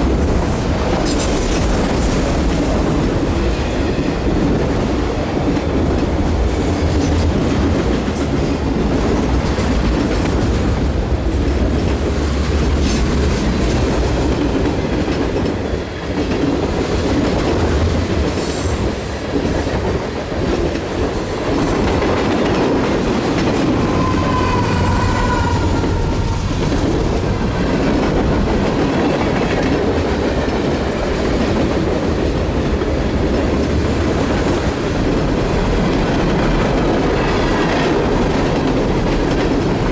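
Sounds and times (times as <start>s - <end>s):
freight train rumbling past: 0.0s - 39.9s
train wheels clicking over rail joints: 0.0s - 39.9s
high wheel squeal: 23.6s - 26.7s.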